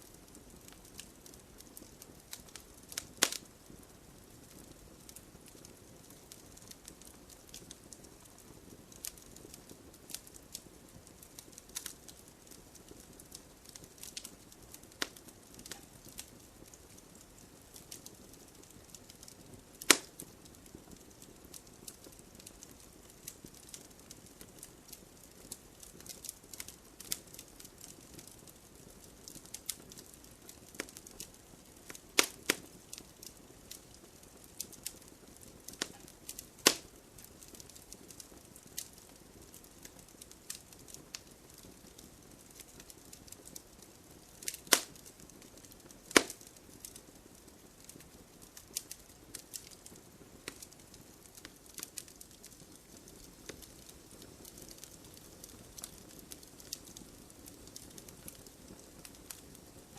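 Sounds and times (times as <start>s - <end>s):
wood fire crackling: 0.0s - 59.9s
loud sharp pops: 36.6s - 36.9s, 44.7s - 45.0s, 46.1s - 46.4s.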